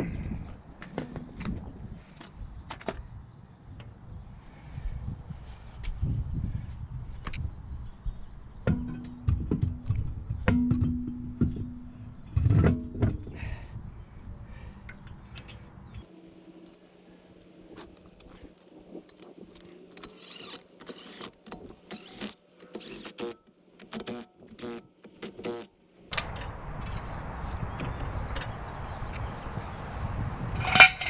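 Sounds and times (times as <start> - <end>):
steady hum: 16.1 - 25.8.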